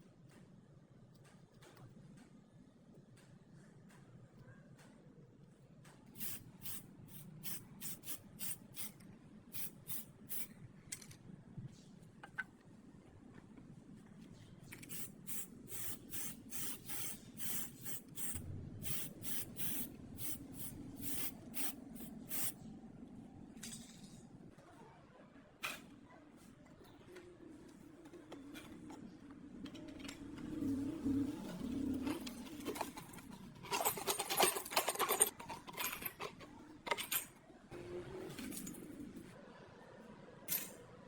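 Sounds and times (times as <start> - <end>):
hissing spray puffs: 14.8 - 22.5.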